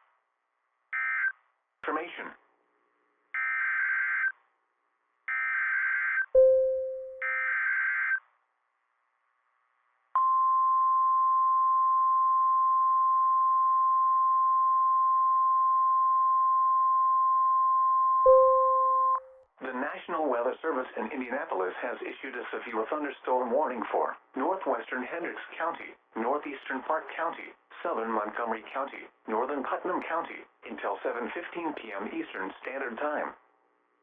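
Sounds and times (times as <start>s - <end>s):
steady warning alarm tone: 5.3s - 8.2s, 18.3s - 19.4s
short ping: 6.4s - 7.3s, 18.3s - 19.4s.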